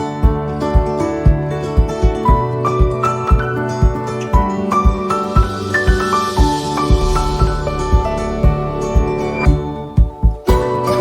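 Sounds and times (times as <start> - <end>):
low thumping beat: 3.8 - 10.6.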